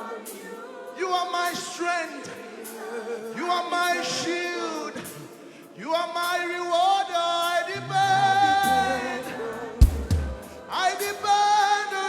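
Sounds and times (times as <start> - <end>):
person singing with vibrato: 0.0 - 12.0
low drum beats: 9.8 - 10.6.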